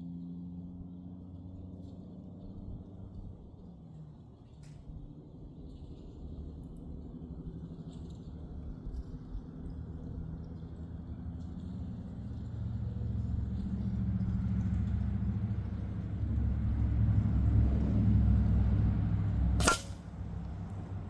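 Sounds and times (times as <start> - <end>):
air rifle shot: 19.6 - 20.2.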